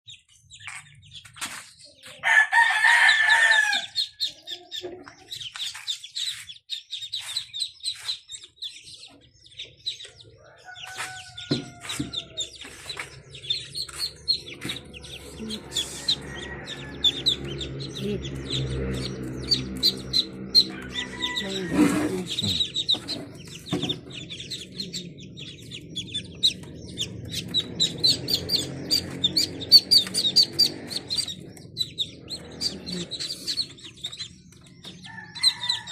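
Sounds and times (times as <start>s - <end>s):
ducklings peeping: 0.1s - 35.9s
rooster crowing: 2.2s - 4.2s, 10.3s - 12.6s, 15.0s - 18.0s, 19.0s - 22.9s, 34.9s - 35.9s.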